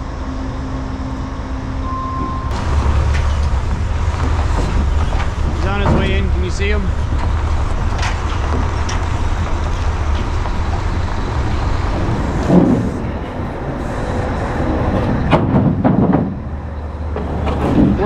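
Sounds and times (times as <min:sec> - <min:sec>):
heavy diesel engine rumbling: 0:00.0 - 0:18.0.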